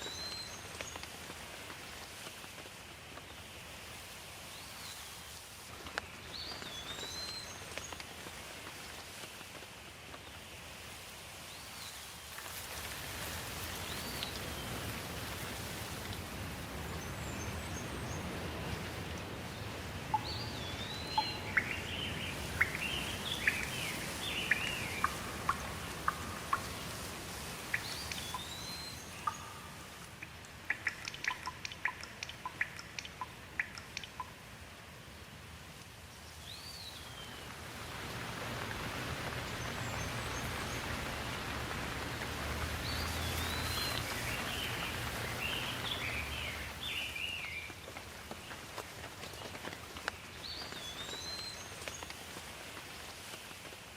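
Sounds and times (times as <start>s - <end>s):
sharp drip-like ticks: 0.0s - 4.2s, 5.3s - 11.0s, 12.2s - 34.9s, 38.5s - 53.9s
steady rain: 0.0s - 53.9s
birds chirping and whistling: 20.2s - 26.6s, 27.7s - 29.8s.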